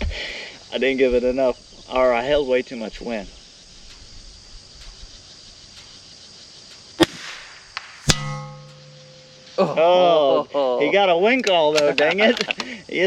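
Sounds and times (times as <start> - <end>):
rifle shot crack: 7.0 - 9.1
bullet striking steel plate ringing: 7.0 - 9.8.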